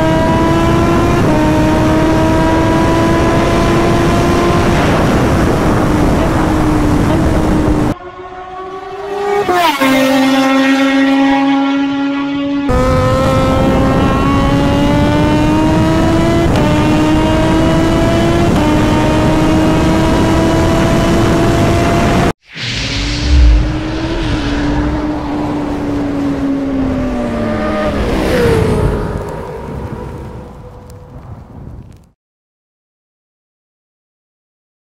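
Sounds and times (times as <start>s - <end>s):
motorcycle engine revving: 0.0s - 22.4s
wind rush: 2.8s - 8.0s, 20.8s - 32.1s
loud low thump: 22.6s - 25.4s.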